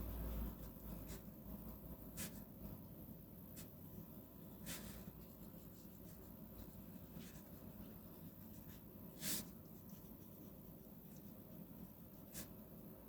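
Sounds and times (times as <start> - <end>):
pencil scratching on paper: 4.4 - 12.6.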